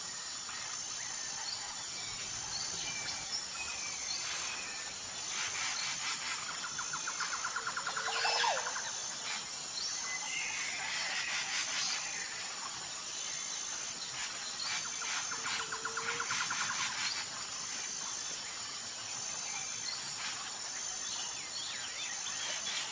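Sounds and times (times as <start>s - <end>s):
high insect drone: 0.0s - 22.9s.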